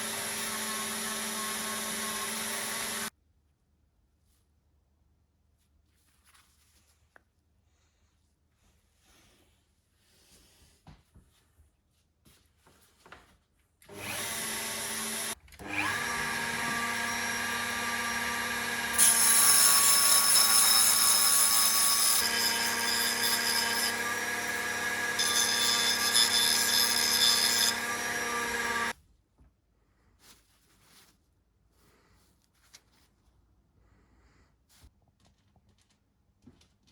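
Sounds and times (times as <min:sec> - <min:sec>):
handheld electric power tool: 0:00.0 - 0:03.1, 0:13.9 - 0:29.0.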